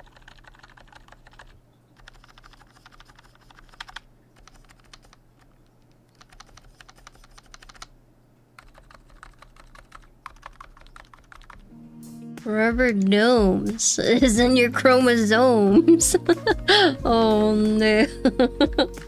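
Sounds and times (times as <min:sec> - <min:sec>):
keyboard typing: 0:00.0 - 0:07.9, 0:08.6 - 0:11.7, 0:12.4 - 0:14.7.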